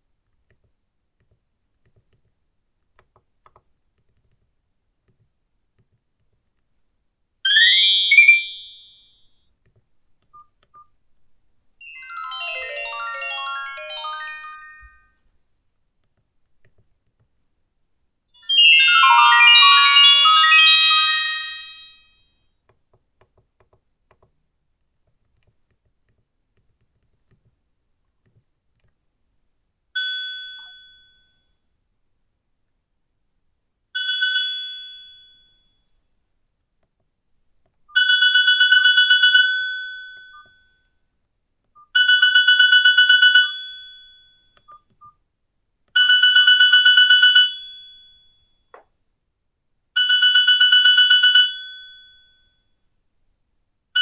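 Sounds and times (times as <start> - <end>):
melodic ringtone: 7.5 - 9.3, 11.8 - 15.2, 18.3 - 22.1.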